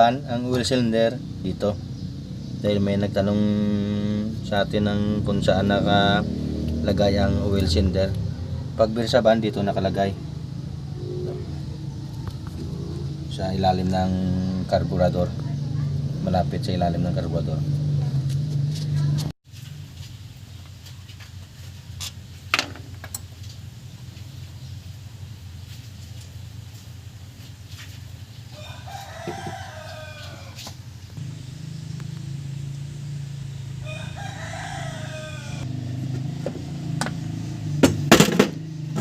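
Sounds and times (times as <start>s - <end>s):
rooster crowing: 10.1s - 14.7s, 28.5s - 32.5s, 33.4s - 36.2s
low steady hum: 31.0s - 35.0s
sharp knocks: 37.8s - 39.0s.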